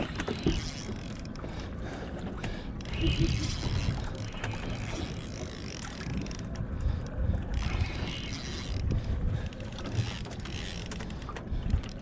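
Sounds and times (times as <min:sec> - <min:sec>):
fishing reel clicking: 0:00.0 - 0:01.2, 0:07.6 - 0:08.9, 0:09.9 - 0:11.2
wind on microphone: 0:02.8 - 0:10.8.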